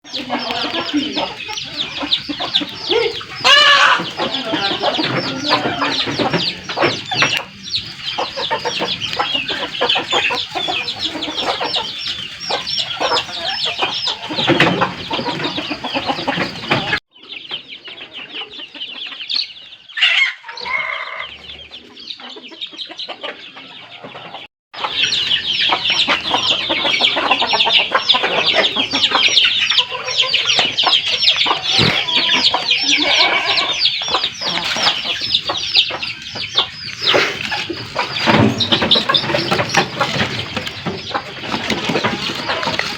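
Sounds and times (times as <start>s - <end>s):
birds clucking and chirping: 0.0s - 42.9s.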